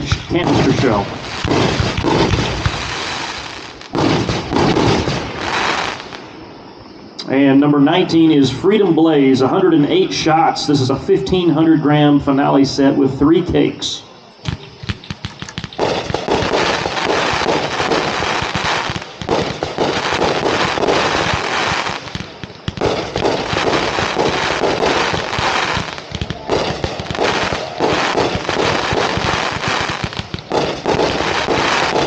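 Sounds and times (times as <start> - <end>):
firework cakes firing barrage: 0.0 - 6.4, 14.4 - 32.0.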